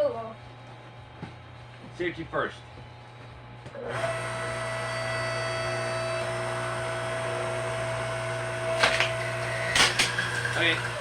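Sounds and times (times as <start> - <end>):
log splitter motor humming: 2.8 - 11.0
wood cracking: 8.7 - 10.8.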